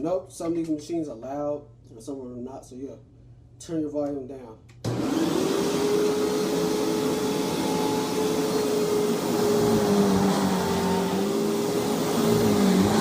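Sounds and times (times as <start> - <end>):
vacuum cleaner running: 4.9 - 13.0.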